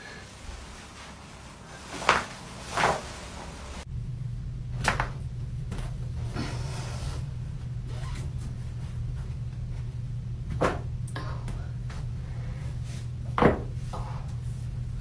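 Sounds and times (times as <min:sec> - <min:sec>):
back cracking: 0:00.0 - 0:03.8
steady low hum: 0:00.0 - 0:06.2.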